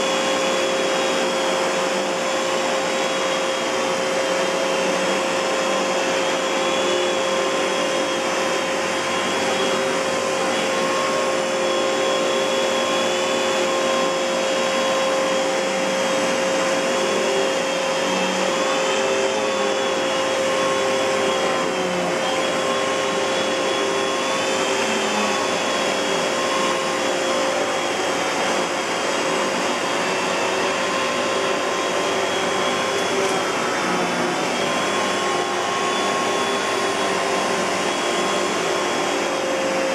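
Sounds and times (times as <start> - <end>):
vacuum cleaner motor running: 0.0 - 39.9.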